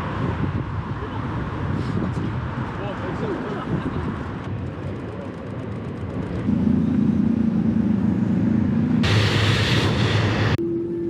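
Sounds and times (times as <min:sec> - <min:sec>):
vehicle low hum: 0:03.8 - 0:11.0
loud hiss: 0:09.0 - 0:10.6.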